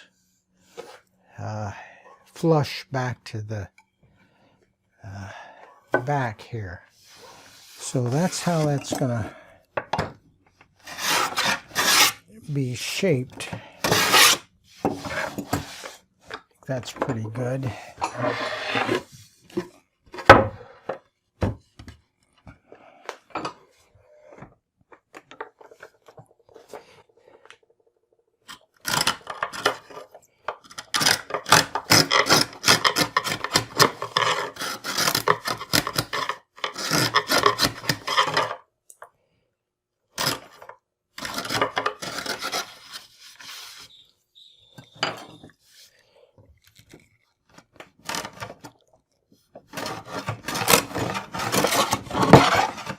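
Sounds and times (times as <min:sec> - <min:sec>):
hand tool scraping wood: 0:07.0 - 0:09.4, 0:10.8 - 0:16.0, 0:16.8 - 0:20.3, 0:28.8 - 0:38.6, 0:40.2 - 0:44.1, 0:49.7 - 0:52.9.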